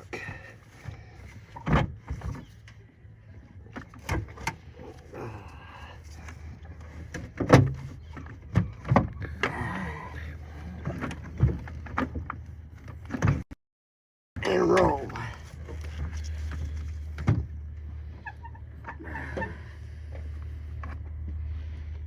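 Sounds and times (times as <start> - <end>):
car battery knocks and clunks: 7.1 - 9.7
steady low hum: 14.8 - 22.0.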